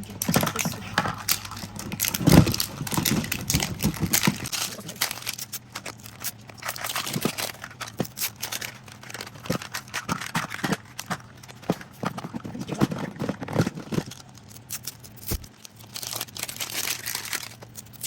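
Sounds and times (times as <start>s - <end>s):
plastic crinkling: 0.0s - 18.0s.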